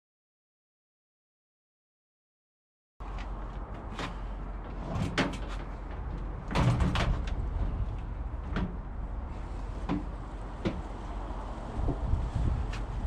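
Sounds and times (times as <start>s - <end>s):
steady low rumble: 3.0s - 13.0s
knocks and clunks: 3.1s - 9.2s, 9.8s - 10.9s.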